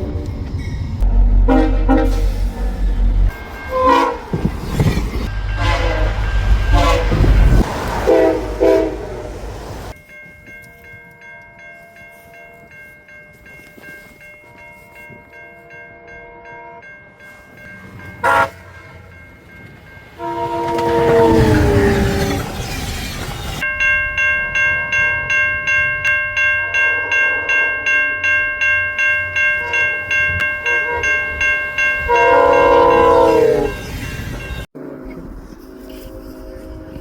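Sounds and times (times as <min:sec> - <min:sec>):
train rumbling past: 0:00.0 - 0:10.0, 0:17.1 - 0:23.9, 0:30.2 - 0:37.0
train horn chord dropping in pitch: 0:01.0 - 0:02.6, 0:03.7 - 0:04.3, 0:05.3 - 0:09.5, 0:18.2 - 0:18.7, 0:20.2 - 0:22.1, 0:32.1 - 0:33.8
train horn blasts: 0:01.0 - 0:04.5, 0:05.2 - 0:09.6, 0:18.2 - 0:18.8, 0:20.2 - 0:22.2, 0:30.6 - 0:31.2, 0:32.0 - 0:33.9, 0:34.8 - 0:37.0.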